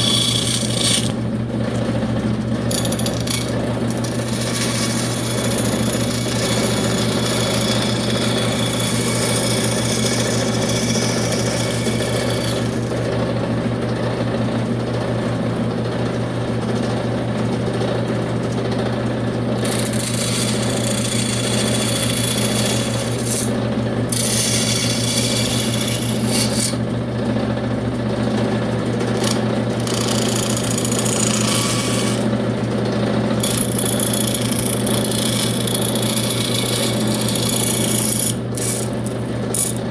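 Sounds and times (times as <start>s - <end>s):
power tool motor hum: 0.0s - 1.9s, 2.5s - 13.1s, 19.6s - 26.8s, 29.1s - 32.3s, 33.4s - 39.9s
high hiss of tool cutting wood: 33.5s - 39.8s.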